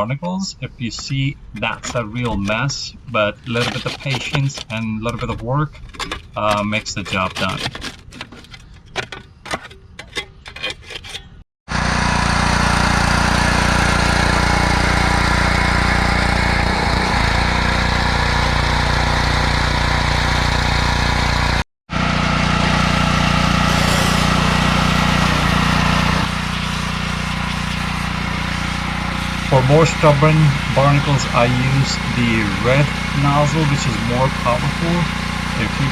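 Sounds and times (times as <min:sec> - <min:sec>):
barnacles scraped off hull: 0:01.6 - 0:11.4
power washer spraying: 0:11.7 - 0:21.5, 0:22.2 - 0:35.9.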